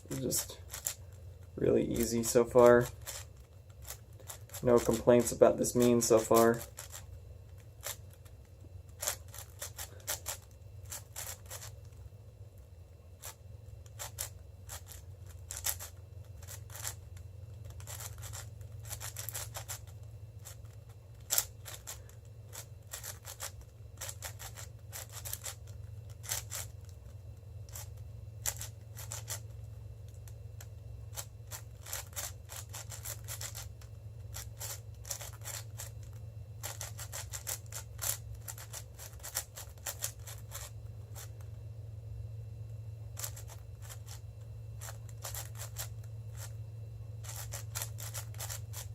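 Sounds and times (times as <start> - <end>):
puzzle cube clicking and scraping: 0.0 - 8.3, 8.9 - 11.9, 13.2 - 27.0, 27.7 - 29.5, 31.1 - 33.7, 34.3 - 41.4, 43.2 - 44.2, 44.8 - 46.6, 47.2 - 48.9.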